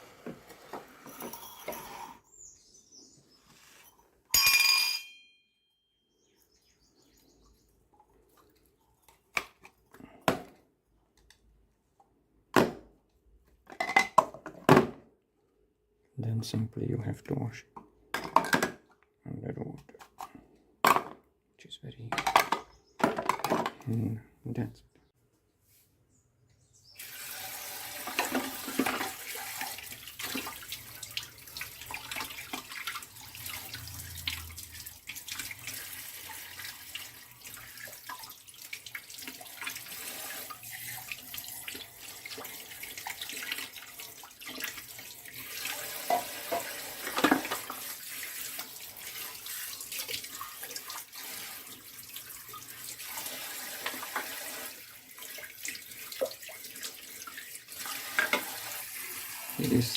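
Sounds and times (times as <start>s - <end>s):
tap water running into sink: 27.0s - 59.9s.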